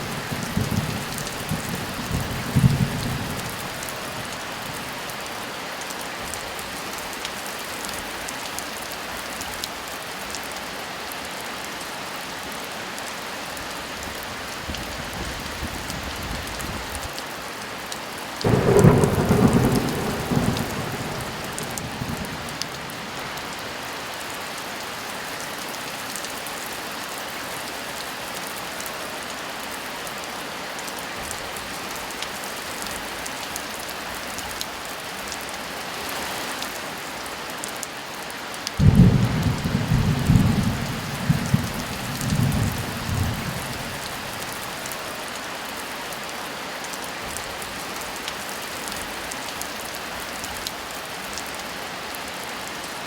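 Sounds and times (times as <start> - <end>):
thunder clap and rumble: 0.0 - 4.3, 18.5 - 23.4, 38.8 - 44.4
heavy rain: 0.0 - 53.0.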